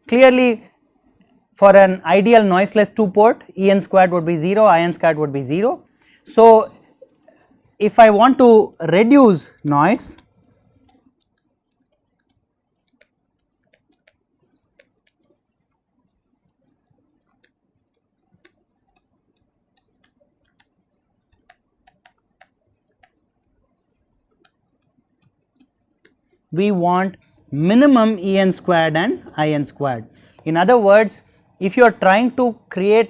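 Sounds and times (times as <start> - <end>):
pen tapping on surface: 19.8 - 23.2.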